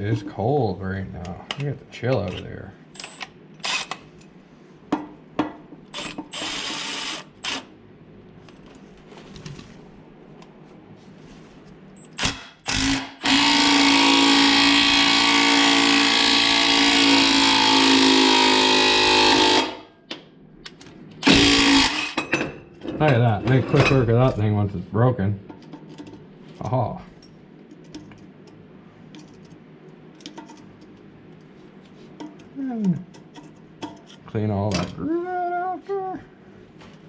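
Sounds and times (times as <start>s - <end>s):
impact wrench running: 3.0s - 4.0s, 5.9s - 7.7s, 12.1s - 19.8s, 21.2s - 22.2s.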